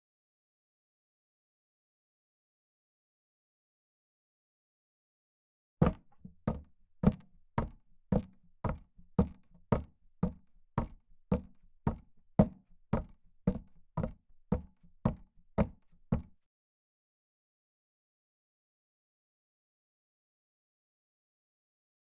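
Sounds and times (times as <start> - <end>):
sharp knocks: 5.8 - 8.3.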